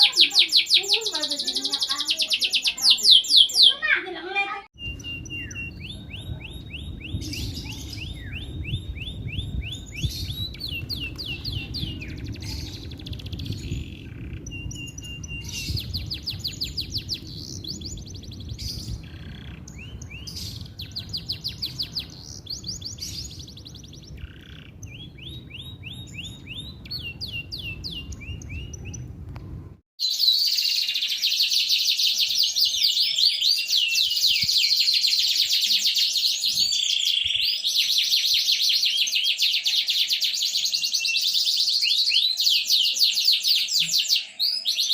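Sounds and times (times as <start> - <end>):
canary singing trills: 0.0 - 29.1.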